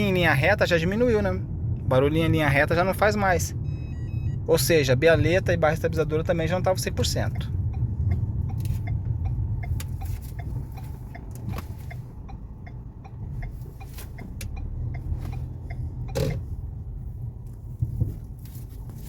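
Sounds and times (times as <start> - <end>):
car cabin road rumble: 0.0 - 19.0
light ticking: 7.3 - 16.5.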